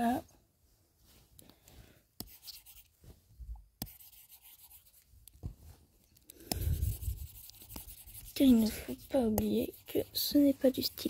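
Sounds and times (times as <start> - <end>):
stylus scratching on touchscreen: 2.2 - 2.9, 3.8 - 5.0, 6.5 - 11.0.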